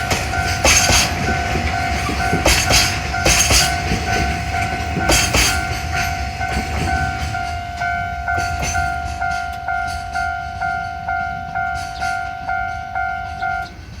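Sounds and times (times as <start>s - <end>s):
wheel clacks over rail joints: 0.0s - 10.3s
level crossing warning bell: 0.0s - 14.0s
train rumble: 0.0s - 14.0s.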